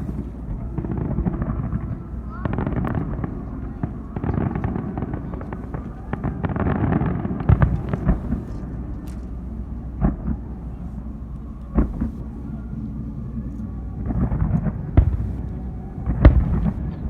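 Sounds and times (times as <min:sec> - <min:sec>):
fireworks crackling bursts: 0:00.0 - 0:09.0, 0:11.8 - 0:12.4, 0:14.1 - 0:17.0.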